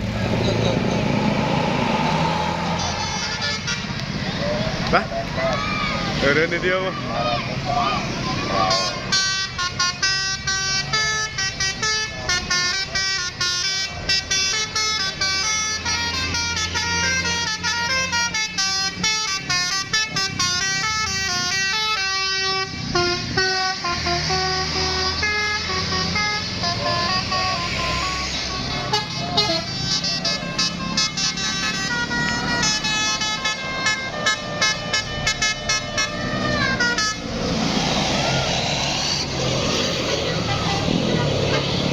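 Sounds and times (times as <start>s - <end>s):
bus engine running: 0.0s - 41.9s
musical air horn tooting: 2.4s - 4.2s, 8.7s - 38.4s.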